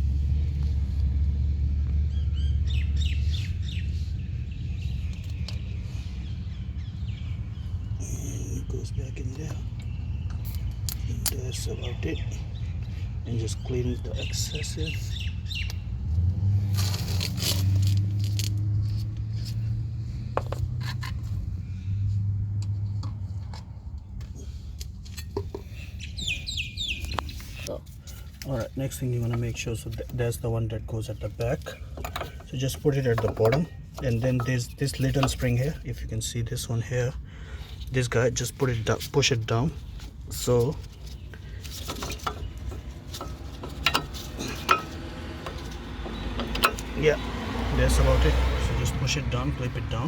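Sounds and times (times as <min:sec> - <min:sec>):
small bird chirping: 0:02.1 - 0:16.0, 0:25.6 - 0:27.8, 0:38.5 - 0:47.3
metal parts clinking and scraping: 0:39.8 - 0:46.9.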